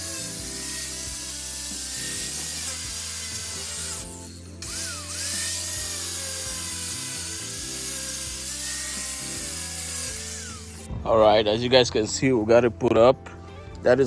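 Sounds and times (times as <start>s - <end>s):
power tool whining: 0.0s - 10.9s
background music: 0.0s - 14.0s.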